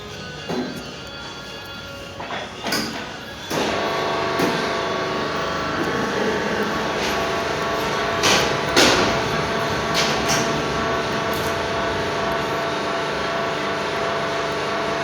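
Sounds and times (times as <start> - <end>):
machine running with humming tones: 3.5 - 15.0.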